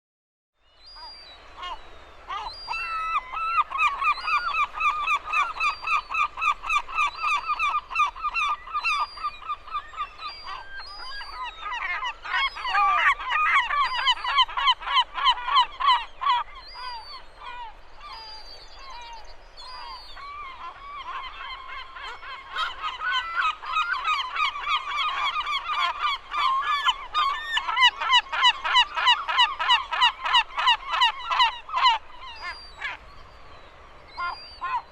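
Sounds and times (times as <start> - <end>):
seagulls calling: 0.8 - 34.9.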